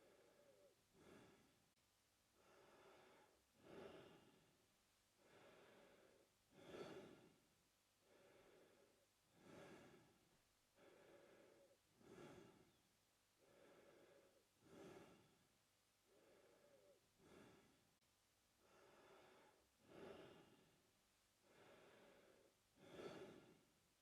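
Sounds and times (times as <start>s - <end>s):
man breathing through mouth: 8.1s - 10.1s, 10.8s - 12.8s, 13.4s - 15.4s, 16.1s - 17.8s, 21.4s - 23.6s.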